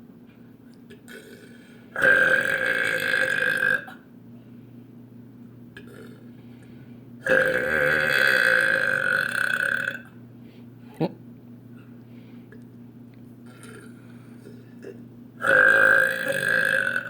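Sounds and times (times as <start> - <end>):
loud burps: 0.9 - 4.0, 5.8 - 6.3, 7.2 - 10.2, 13.5 - 17.0.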